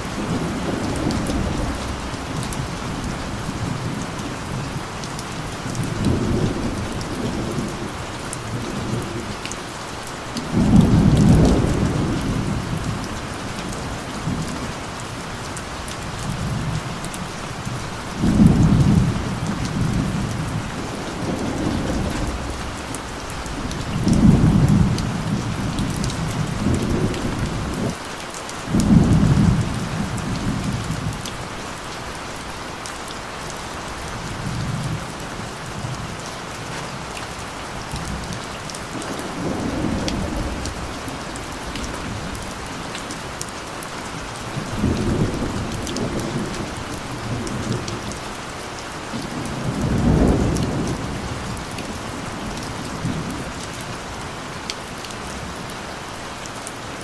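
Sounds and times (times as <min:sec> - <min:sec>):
thunder rumbling: 0:00.0 - 0:04.8, 0:10.5 - 0:14.8, 0:17.7 - 0:28.0, 0:33.9 - 0:43.0, 0:44.2 - 0:48.2, 0:49.2 - 0:53.6
steady rain: 0:00.0 - 0:57.0.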